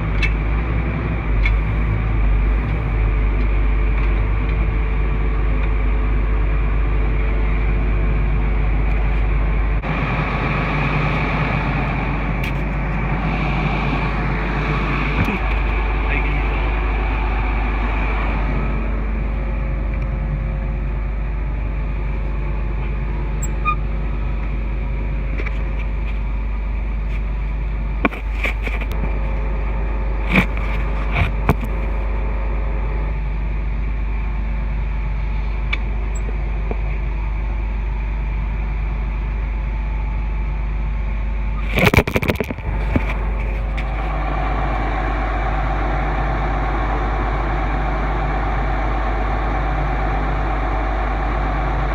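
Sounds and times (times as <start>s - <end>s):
engine idling: 0.0s - 51.9s.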